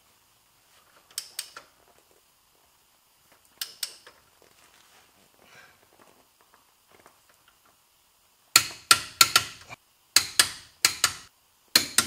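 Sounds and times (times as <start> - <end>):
torque wrench clicking: 3.6 - 4.1, 8.6 - 12.0.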